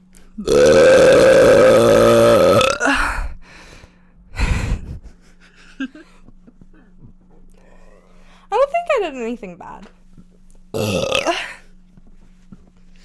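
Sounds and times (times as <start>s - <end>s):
woman burping: 0.4s - 3.2s, 10.8s - 11.7s.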